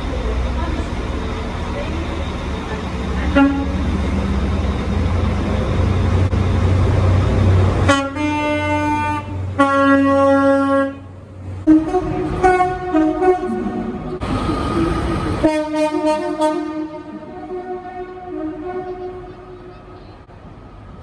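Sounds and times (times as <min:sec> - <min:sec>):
train low rumble: 0:00.0 - 0:21.0
train horn blasts: 0:03.3 - 0:03.9, 0:07.8 - 0:14.0, 0:15.4 - 0:19.7.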